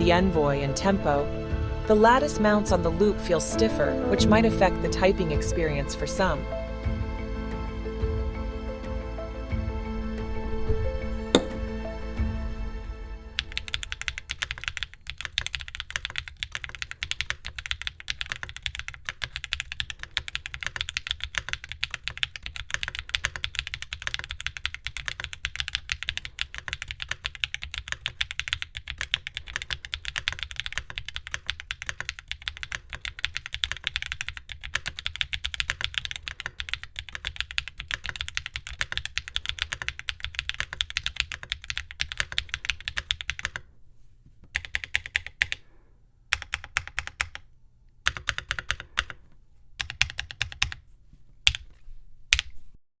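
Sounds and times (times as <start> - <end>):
fast typing on mechanical keyboard: 13.6 - 43.7, 44.5 - 45.6, 46.3 - 49.2, 49.8 - 50.8, 51.5 - 51.7.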